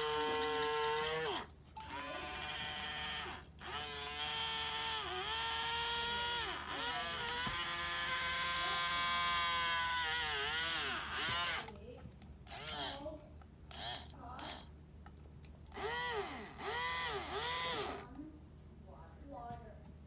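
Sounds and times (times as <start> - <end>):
robot arm motors whining: 0.0 - 11.8, 12.5 - 13.1, 13.7 - 14.7, 15.7 - 18.1.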